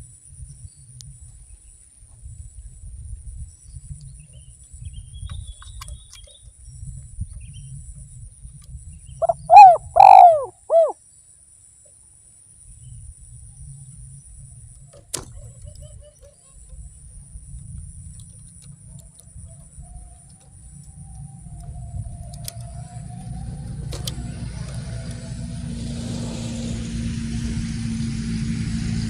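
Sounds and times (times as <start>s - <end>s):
dove cooing: 9.2s - 11.0s
low rumble: 16.8s - 29.0s.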